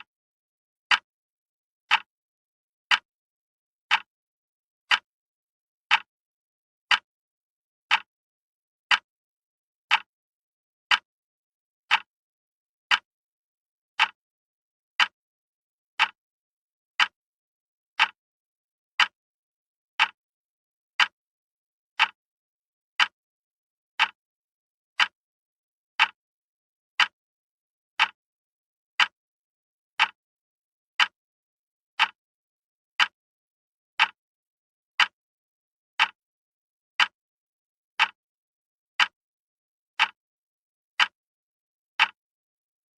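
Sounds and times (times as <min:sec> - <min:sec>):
wall clock ticking: 0:00.9 - 0:01.1, 0:01.9 - 0:02.1, 0:02.9 - 0:03.1, 0:03.9 - 0:04.1, 0:04.9 - 0:05.1, 0:05.9 - 0:06.1, 0:06.9 - 0:07.1, 0:07.9 - 0:08.1, 0:08.9 - 0:09.1, 0:09.9 - 0:10.1, 0:10.9 - 0:11.1, 0:11.9 - 0:12.1, 0:13.9 - 0:14.2, 0:15.0 - 0:15.2, 0:16.0 - 0:16.2, 0:17.0 - 0:17.2, 0:18.0 - 0:18.2, 0:19.0 - 0:19.2, 0:20.0 - 0:20.2, 0:21.0 - 0:21.2, 0:22.0 - 0:22.2, 0:23.0 - 0:23.2, 0:24.0 - 0:24.2, 0:26.0 - 0:26.2, 0:27.0 - 0:27.2, 0:28.0 - 0:28.2, 0:29.0 - 0:29.2, 0:30.0 - 0:30.2, 0:31.0 - 0:31.2, 0:32.0 - 0:32.2, 0:33.0 - 0:33.2, 0:34.0 - 0:34.2, 0:35.0 - 0:35.2, 0:36.0 - 0:36.2, 0:37.0 - 0:37.2, 0:38.0 - 0:38.2, 0:39.0 - 0:39.2, 0:40.0 - 0:40.2, 0:42.0 - 0:42.2.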